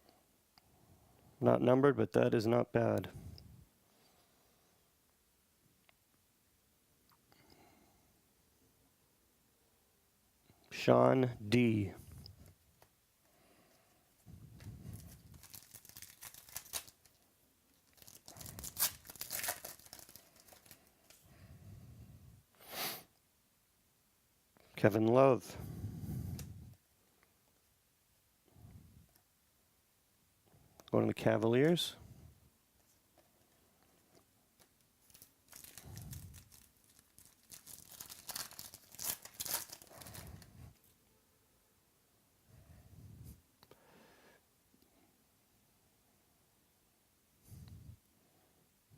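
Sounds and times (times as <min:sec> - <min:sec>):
foil wrapper crinkling and tearing: 0:14.8 - 0:21.2, 0:34.6 - 0:40.5.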